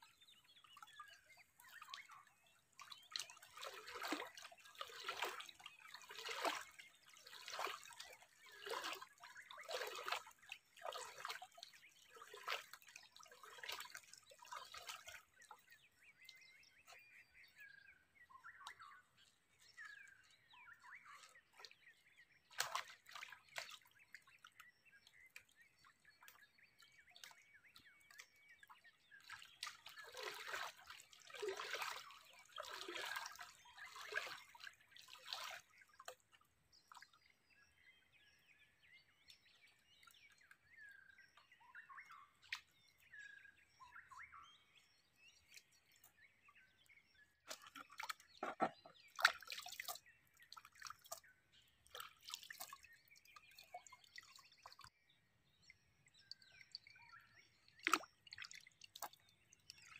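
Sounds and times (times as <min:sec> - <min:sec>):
water drips: 0:00.6 - 0:15.6, 0:22.5 - 0:26.4, 0:29.2 - 0:36.3, 0:47.5 - 0:54.9, 0:56.0 - 0:59.9
faint bird chirps: 0:36.8 - 0:59.9.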